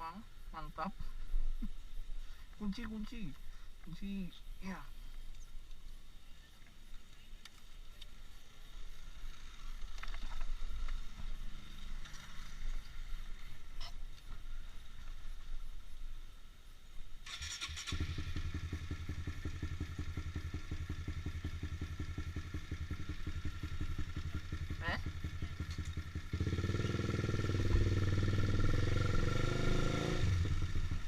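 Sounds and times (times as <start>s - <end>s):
faint street background: 0.0s - 31.0s
motorcycle starter cranking: 17.2s - 18.4s
motorcycle engine idling: 17.4s - 29.2s, 30.3s - 31.0s.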